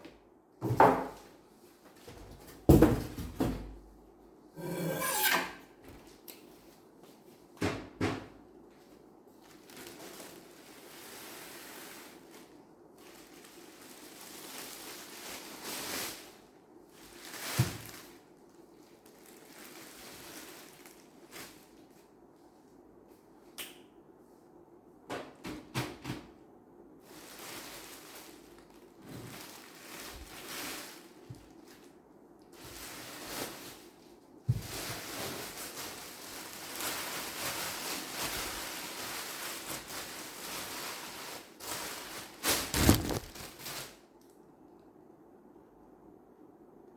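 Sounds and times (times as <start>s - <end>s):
packaging rustling: 9.4s - 12.4s, 34.8s - 44.0s
case being moved: 42.7s - 43.4s.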